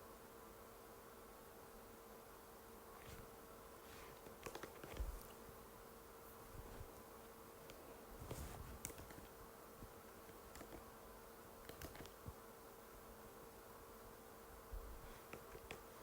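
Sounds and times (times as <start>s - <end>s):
keyboard key clicks: 11.7s - 12.1s.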